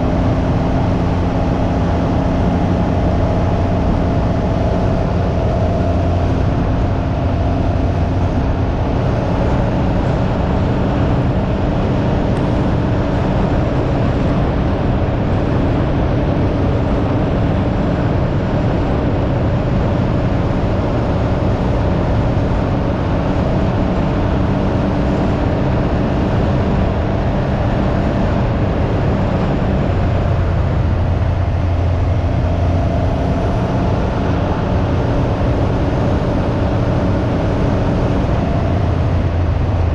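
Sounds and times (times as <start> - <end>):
engine running: 0.0 - 39.9
wind noise on microphone: 0.0 - 39.9.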